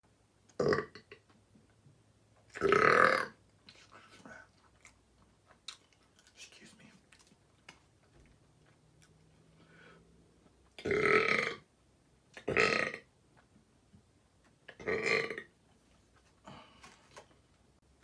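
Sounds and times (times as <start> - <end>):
man belching: 0.6 - 1.2, 2.6 - 3.4, 10.8 - 11.6, 12.4 - 13.1, 14.7 - 15.5.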